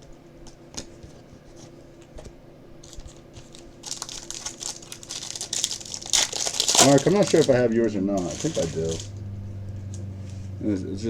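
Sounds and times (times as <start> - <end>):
plastic wrapper crinkling: 2.8 - 9.2.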